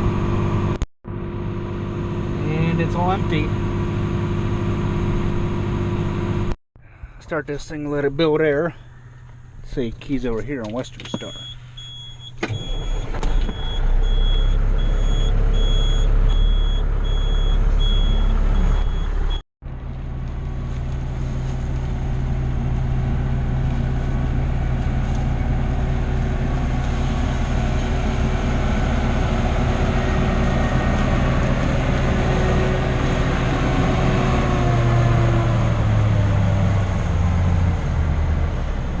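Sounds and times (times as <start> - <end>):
diesel truck engine running: 0.0 - 6.6, 7.3 - 39.0
cab warning beeping: 10.4 - 19.4.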